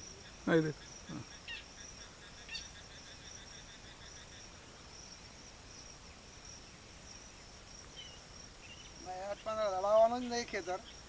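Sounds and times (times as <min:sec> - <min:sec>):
crickets chirping: 0:00.0 - 0:11.0.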